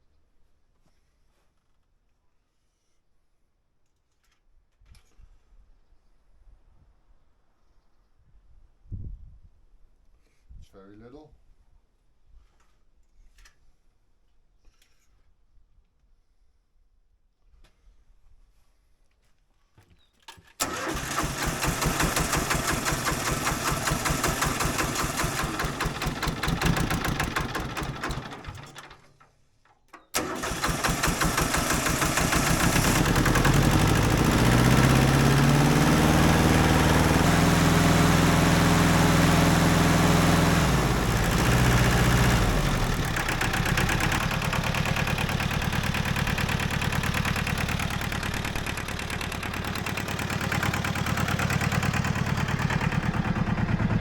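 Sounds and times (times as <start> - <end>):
tractor diesel engine running: 20.6 - 29.2, 30.1 - 54.0.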